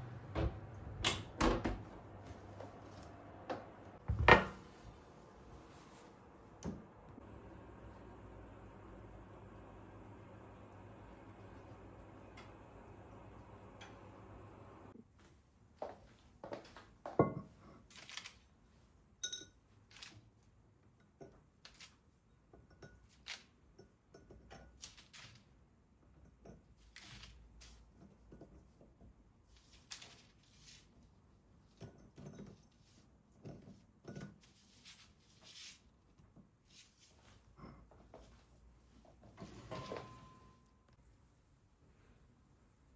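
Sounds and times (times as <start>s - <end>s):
metallic clink: 19.2s - 19.6s.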